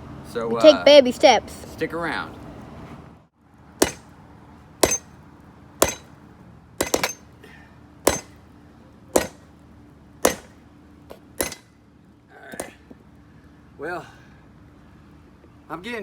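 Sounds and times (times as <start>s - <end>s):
hammer striking metal on anvil: 3.8s - 4.1s, 4.8s - 5.1s, 5.8s - 6.1s, 6.8s - 7.3s, 8.1s - 8.4s, 9.2s - 9.4s, 10.2s - 10.6s, 11.4s - 11.7s.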